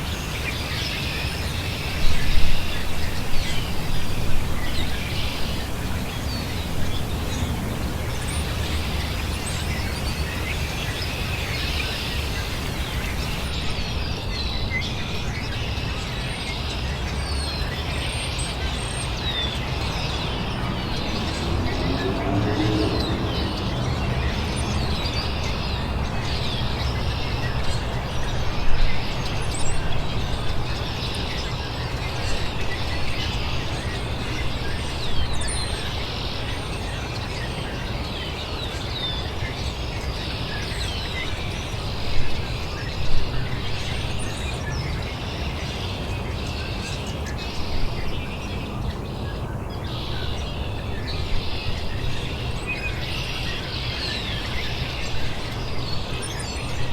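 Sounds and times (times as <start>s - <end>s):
birds chirping and calling: 0.0s - 16.8s.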